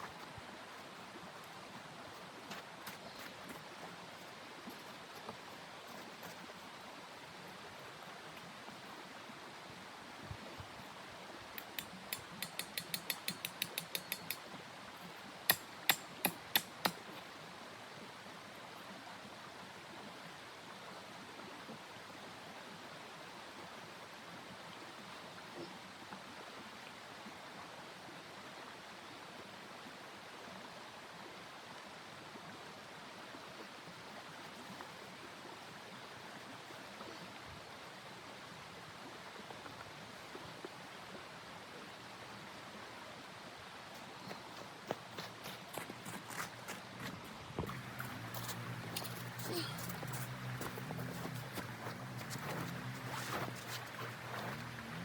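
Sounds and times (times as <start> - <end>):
quick mechanical clicks: 11.6 - 14.4
steady rushing hiss: 47.7 - 55.0.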